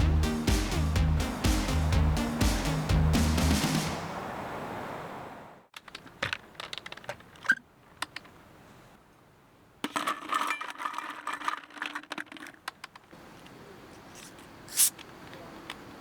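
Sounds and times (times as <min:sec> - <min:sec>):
small hard objects clicking: 0:05.8 - 0:08.3.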